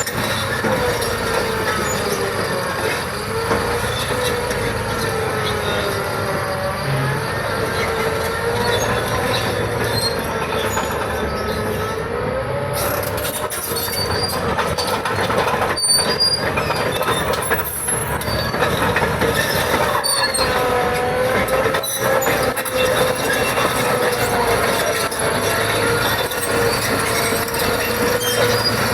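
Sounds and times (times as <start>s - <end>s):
bulldozer engine running: 0.0s - 28.9s
steel tracks squealing: 0.0s - 28.9s
track clanks: 7.4s - 28.9s.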